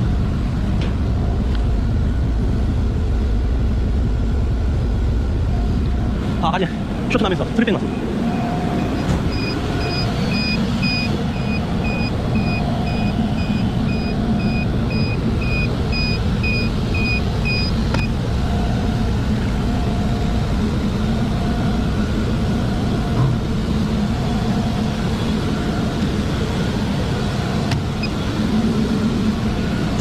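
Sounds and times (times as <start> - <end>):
machinery hum: 0.0 - 30.0
high electronic beeping: 7.8 - 19.1.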